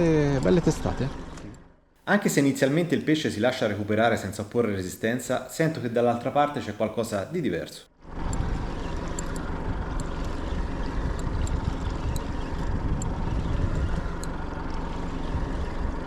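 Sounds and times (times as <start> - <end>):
outboard motor running: 0.0 - 1.8, 8.0 - 16.0
faint high ticks: 11.2 - 12.3.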